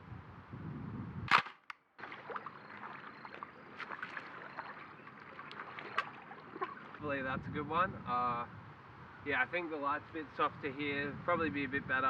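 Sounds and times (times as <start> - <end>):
camera shutter click: 1.3 - 1.8.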